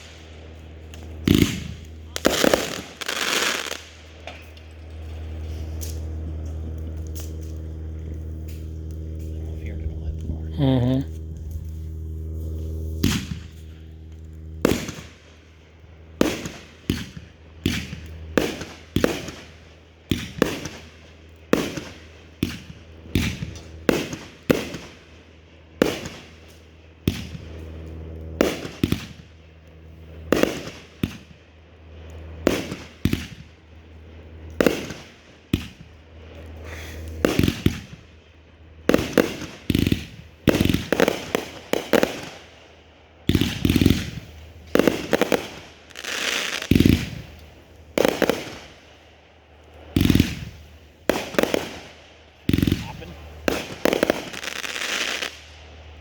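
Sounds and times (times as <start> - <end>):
fireworks bangs with echo: 1.0 - 4.4, 13.0 - 13.6, 14.6 - 15.3, 16.2 - 25.0, 25.8 - 26.4, 28.4 - 29.3, 30.3 - 31.3, 32.3 - 33.6, 34.6 - 35.9, 36.7 - 38.1, 38.8 - 42.6, 43.2 - 48.9, 49.9 - 55.5.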